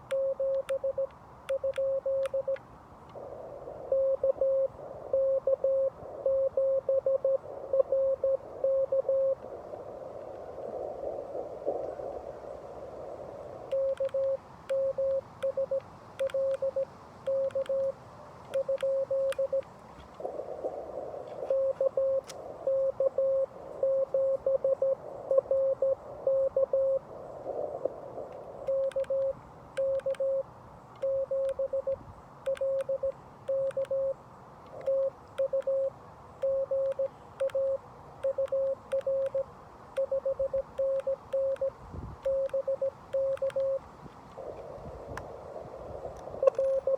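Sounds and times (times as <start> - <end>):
morse code tone: 0.0 - 2.6, 3.9 - 9.4, 13.7 - 17.9, 18.6 - 19.6, 21.4 - 27.0, 28.7 - 34.2, 34.8 - 39.4, 40.0 - 43.9, 46.4 - 46.9
faint clicks: 0.0 - 3.2, 10.2 - 10.8, 13.7 - 20.3, 28.3 - 34.0, 34.6 - 45.3
radio band hiss: 2.4 - 29.6, 42.6 - 46.9.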